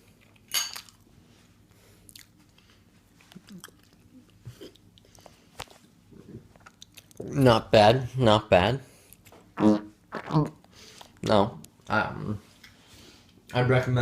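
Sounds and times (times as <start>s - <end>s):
person chewing wet food: 2.0s - 7.3s.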